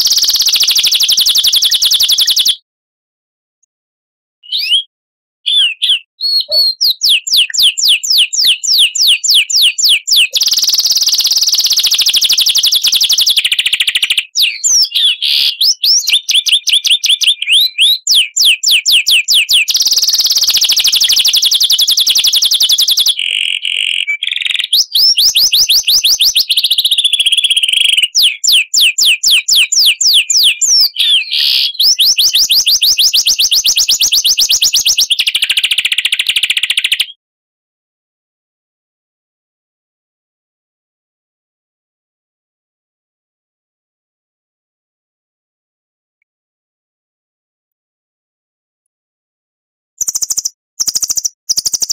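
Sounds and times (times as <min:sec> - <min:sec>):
songbird chirps and trills: 0:50.0 - 0:51.9.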